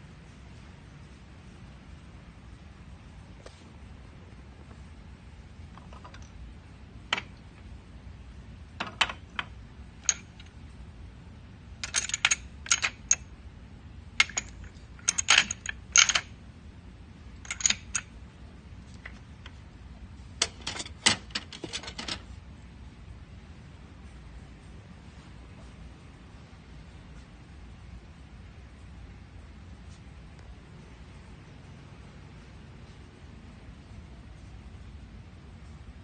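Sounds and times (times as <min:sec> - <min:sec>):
low steady hum: 0:00.0 - 0:36.0.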